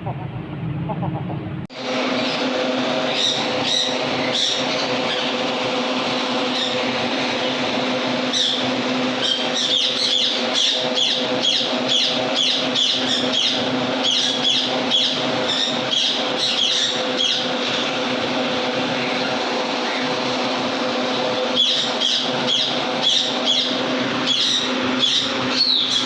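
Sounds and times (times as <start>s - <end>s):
steady mechanical hum: 0.0s - 26.0s
parrots chirping: 2.1s - 5.4s, 6.4s - 18.0s, 21.1s - 26.0s.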